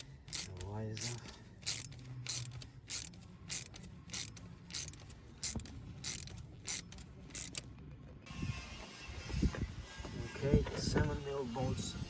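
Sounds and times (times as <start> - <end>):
hand ratchet clicking: 0.0 - 7.7.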